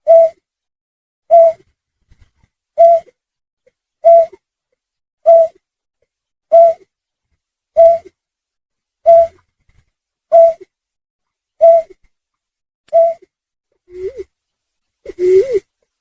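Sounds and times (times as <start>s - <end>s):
snipe calls: 0.0s - 0.4s, 1.3s - 1.6s, 2.8s - 3.0s, 4.0s - 4.4s, 5.2s - 5.5s, 7.8s - 8.1s, 9.1s - 9.4s, 10.3s - 10.6s, 11.6s - 11.9s, 12.9s - 13.2s.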